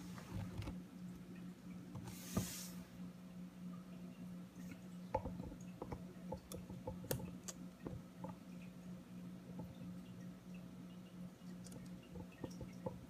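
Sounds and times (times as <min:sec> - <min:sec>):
small clicks and taps: 0:05.1 - 0:08.7, 0:09.5 - 0:10.2, 0:11.5 - 0:13.0.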